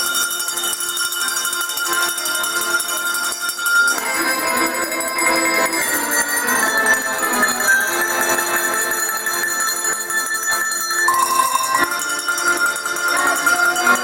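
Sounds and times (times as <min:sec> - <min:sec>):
tuned cowbells playing: 0:00.0 - 0:14.0
accordion chords: 0:11.1 - 0:14.0.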